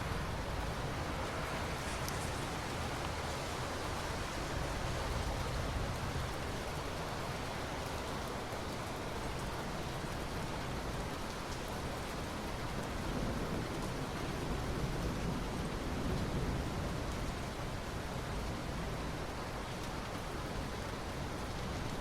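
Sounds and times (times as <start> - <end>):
steady rainfall: 0.0 - 22.0.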